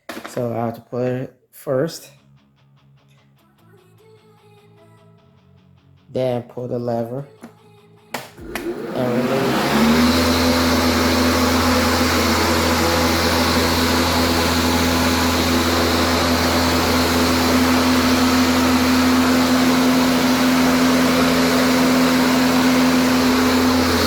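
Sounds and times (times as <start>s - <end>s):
electric lawn mower humming: 8.4s - 24.0s.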